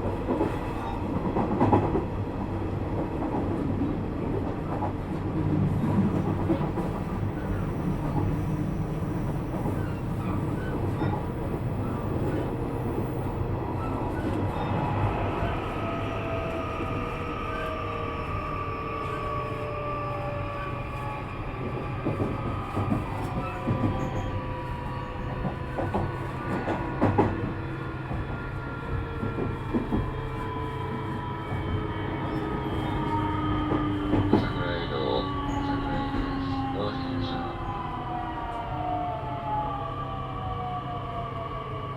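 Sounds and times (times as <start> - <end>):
train wheels rumbling on rail: 0.0 - 41.9
rail-joint clicks and knocks: 25.1 - 36.6.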